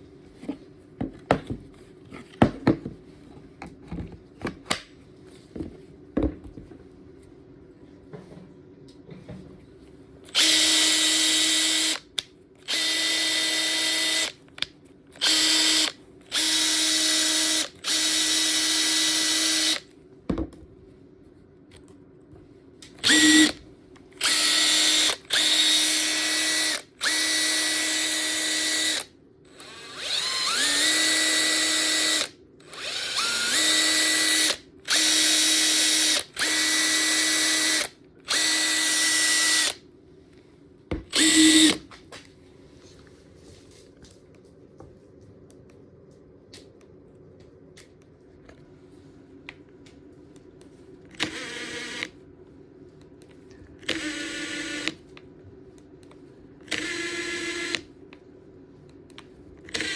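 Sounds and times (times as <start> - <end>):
impact driver motor whirring: 10.3 - 14.4, 15.2 - 19.8, 23.0 - 23.6, 24.2 - 39.8, 41.1 - 41.8, 51.1 - 52.2, 53.8 - 55.0, 56.6 - 57.8, 59.7 - 59.9.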